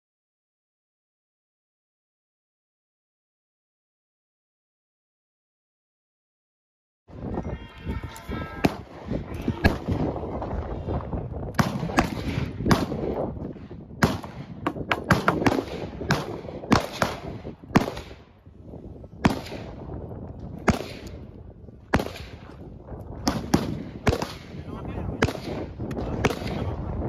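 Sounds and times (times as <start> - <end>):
gunshots: 8.6 - 10.9, 11.5 - 18.3, 19.2 - 20.0, 20.6 - 21.3, 21.9 - 22.6, 23.2 - 26.9.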